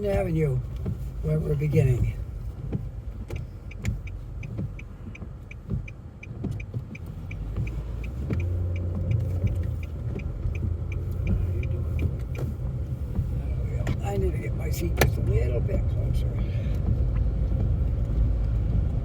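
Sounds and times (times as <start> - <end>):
car engine and road rumble: 0.0 - 19.0
turn-signal indicator clicking: 1.6 - 14.0.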